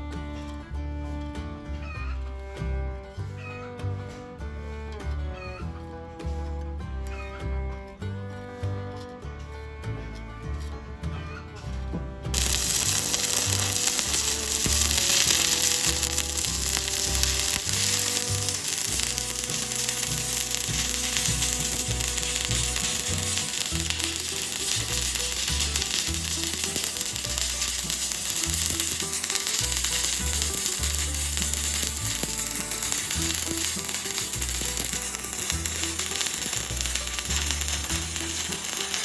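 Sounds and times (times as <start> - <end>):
welding arc crackling and sizzling: 12.4 - 39.0.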